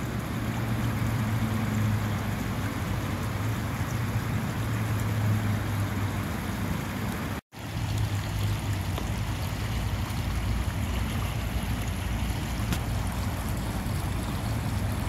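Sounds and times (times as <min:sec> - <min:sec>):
low hum and rumble: 0:07.6 - 0:15.0.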